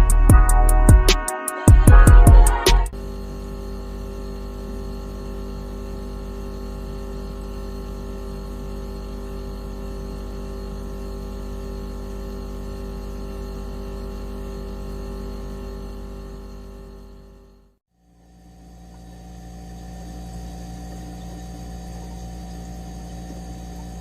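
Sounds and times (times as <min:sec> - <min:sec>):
drum-beat music: 0:00.0 - 0:03.0
steady synthetic electronic tone: 0:00.0 - 0:04.6.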